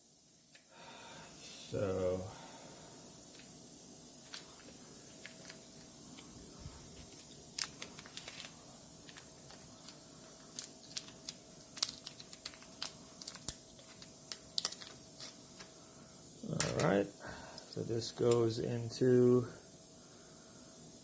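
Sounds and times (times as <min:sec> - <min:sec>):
faint steady hum: 0:00.0 - 0:21.0
small parts clicking and rustling: 0:04.2 - 0:15.8, 0:17.6 - 0:18.6.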